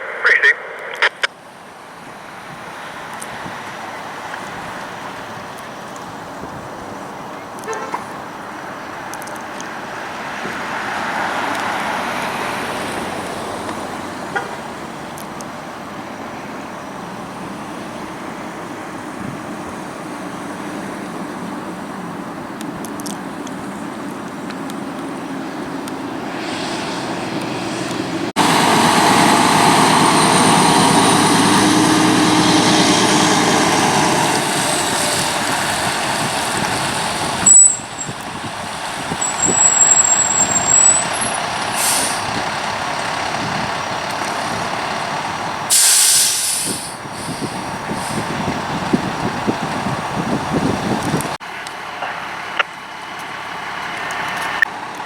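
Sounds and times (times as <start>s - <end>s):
diesel engines running: 0.0s - 55.0s
air brakes hissing: 26.3s - 28.0s, 41.7s - 42.3s, 45.7s - 48.4s.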